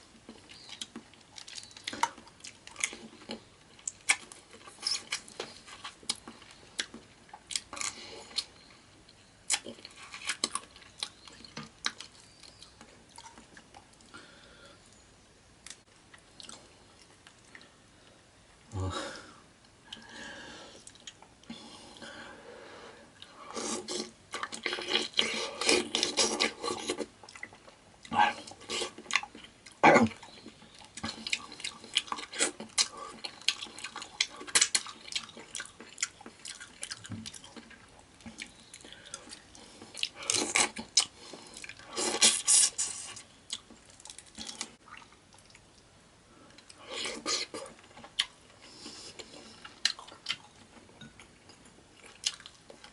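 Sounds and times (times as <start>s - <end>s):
sticky food crackling: 0.1s - 14.3s, 23.2s - 45.9s
wet chewing and smacking: 0.2s - 14.2s, 23.2s - 45.9s, 46.5s - 52.9s.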